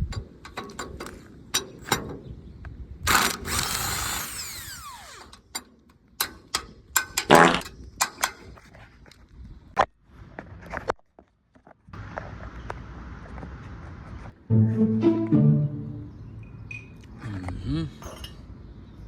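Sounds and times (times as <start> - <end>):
tools clicking and knocking: 0.0 - 2.3, 5.2 - 8.7
power tool whine: 3.1 - 5.4
tool buzzing: 3.1 - 5.4.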